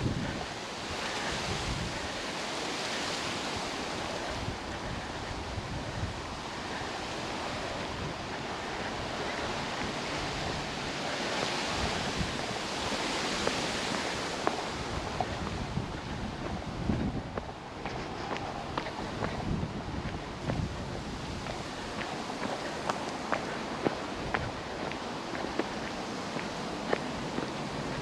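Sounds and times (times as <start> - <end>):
wind buffeting microphone: 0.0 - 28.0
wind rushing through trees: 0.0 - 28.0.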